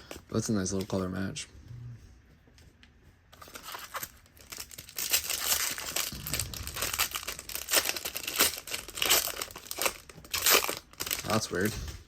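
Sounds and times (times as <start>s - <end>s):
foil wrapper crinkling and tearing: 3.4s - 11.7s.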